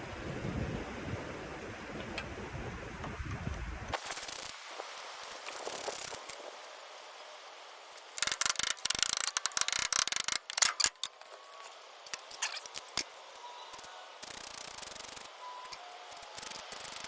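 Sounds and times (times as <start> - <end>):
metallic tool clicks: 8.0 - 17.0
ratchet wrench clicking: 8.0 - 17.0.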